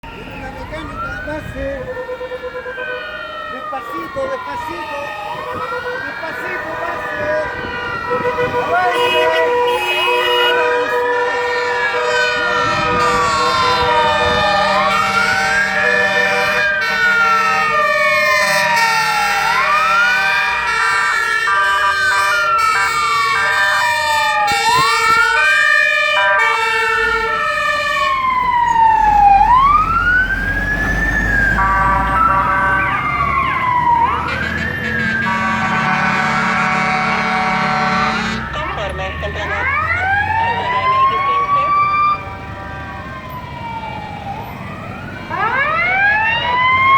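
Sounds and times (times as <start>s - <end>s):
fire engine siren wailing: 0.0s - 46.9s
heavy truck engine rumble: 0.0s - 46.9s
steady siren tones: 0.0s - 46.9s.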